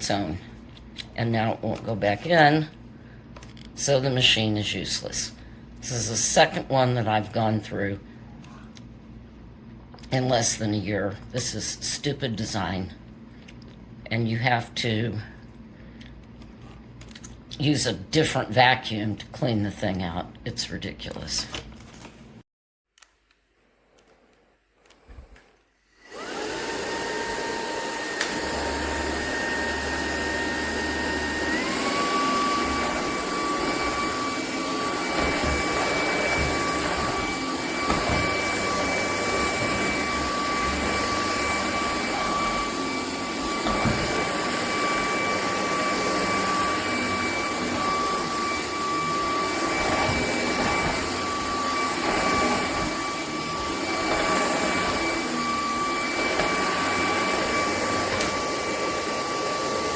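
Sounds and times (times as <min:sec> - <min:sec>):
vacuum cleaner motor whine: 0:24.9 - 0:59.9.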